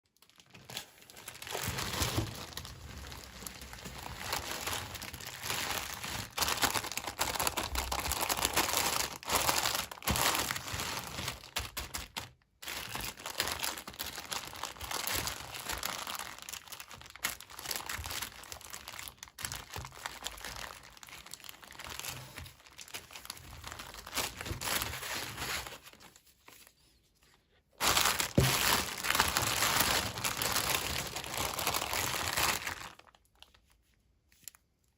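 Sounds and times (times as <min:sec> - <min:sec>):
packaging crinkling: 0:00.1 - 0:34.6.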